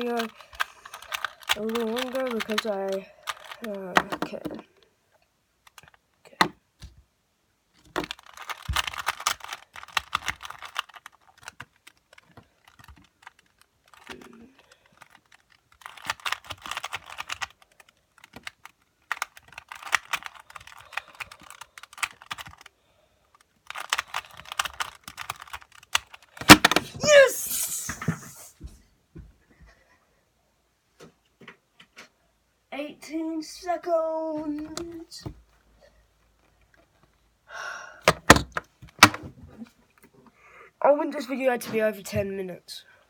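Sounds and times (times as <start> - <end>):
puzzle cube clicking and clattering: 0.0 - 4.7, 5.6 - 7.0, 7.7 - 28.5, 34.4 - 35.0, 38.0 - 39.2.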